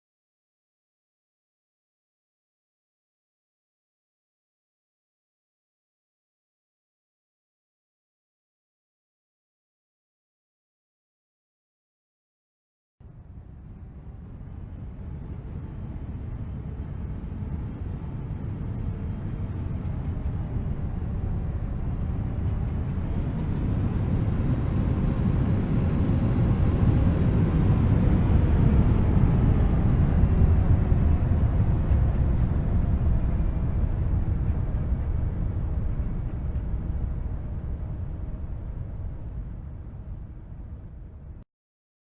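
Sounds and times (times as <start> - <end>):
aircraft passing by: 13.1 - 41.1.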